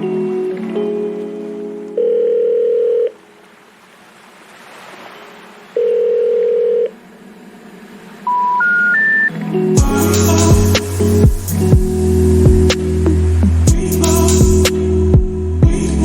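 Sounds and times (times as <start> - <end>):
telephone ringback beeps: 2.0 - 3.2, 5.8 - 6.9, 8.3 - 9.3.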